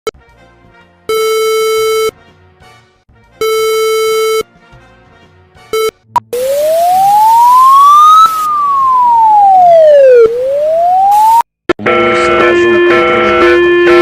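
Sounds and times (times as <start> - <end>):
electronic alarm buzzer: 5.8 - 14.0.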